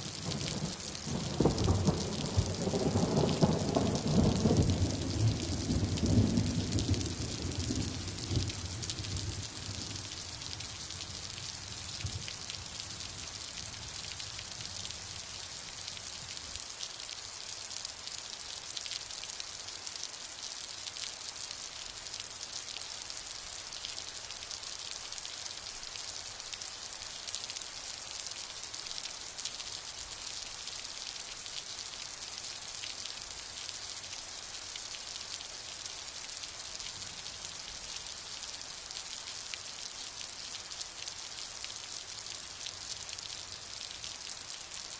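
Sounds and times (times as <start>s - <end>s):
steady rain falling: 0.0s - 44.9s
low rumble of thunder: 0.1s - 10.3s.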